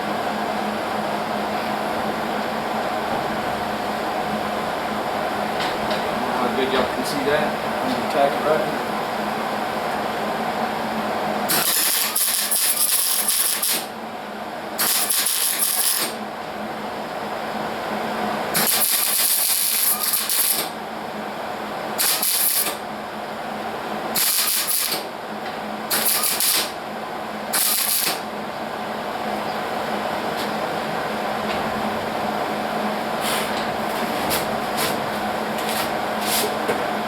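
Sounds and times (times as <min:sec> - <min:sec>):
welding arc sizzle: 0:11.3 - 0:14.0, 0:14.7 - 0:16.3, 0:18.4 - 0:20.9, 0:21.6 - 0:23.1, 0:24.1 - 0:28.4.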